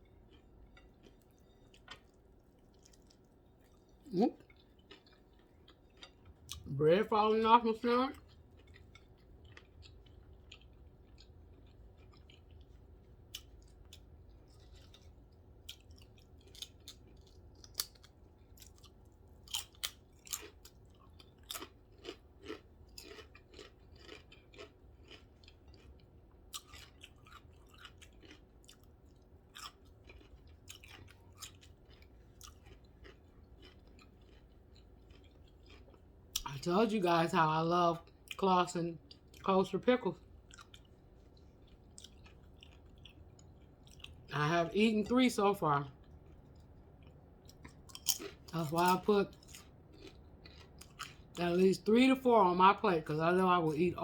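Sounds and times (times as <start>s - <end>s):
chewing with wet mouth clicks: 0.0s - 6.7s, 8.1s - 36.5s, 40.2s - 44.3s, 46.0s - 51.5s.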